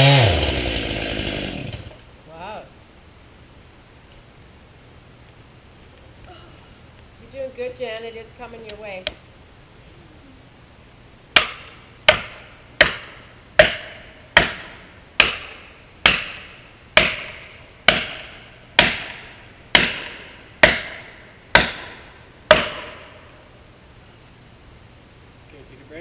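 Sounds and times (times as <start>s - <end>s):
hammer blows on wood: 11.4s - 23.3s.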